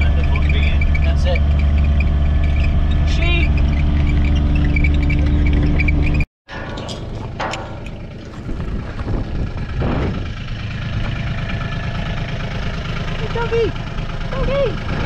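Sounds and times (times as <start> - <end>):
vehicle engine running: 0.0 - 6.2, 6.8 - 15.0
clicks and rattles: 4.0 - 9.0.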